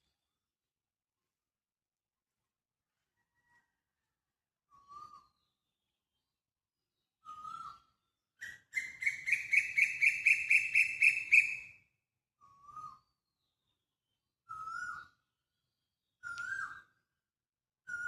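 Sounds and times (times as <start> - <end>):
bird calling: 8.4 - 11.7.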